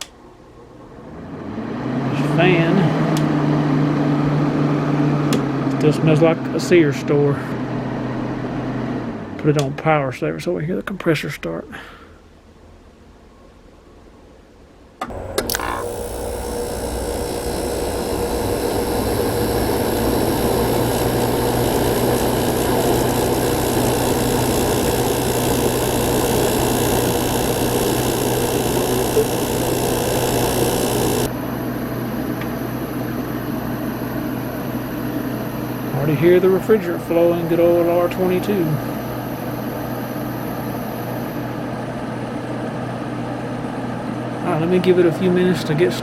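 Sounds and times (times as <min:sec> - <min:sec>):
compressor humming: 0:15.0 - 0:31.4.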